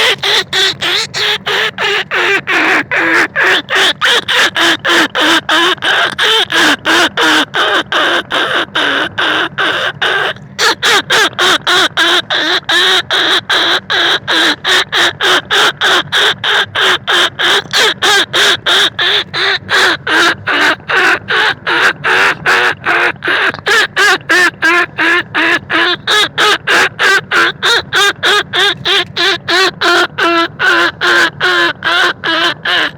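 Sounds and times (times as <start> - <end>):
wavering squeaking calls: 0.0 - 14.8, 15.6 - 25.0.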